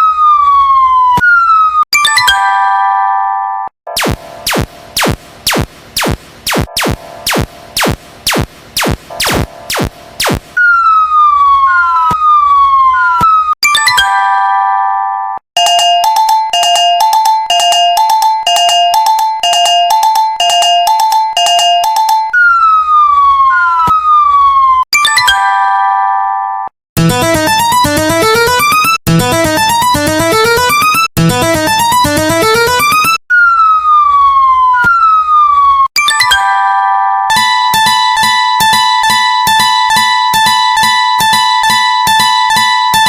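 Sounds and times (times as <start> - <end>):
fast electronic melody over beat: 3.9 - 10.9, 15.6 - 23.7, 27.0 - 34.0, 37.3 - 43.0.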